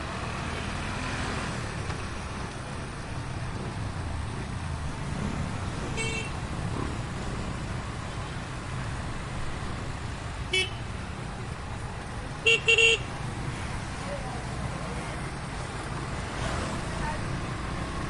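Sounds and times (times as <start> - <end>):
heavy street traffic rumbling: 0.0 - 18.0
vehicle horns tooting: 6.0 - 6.4, 10.5 - 10.8, 12.4 - 13.1.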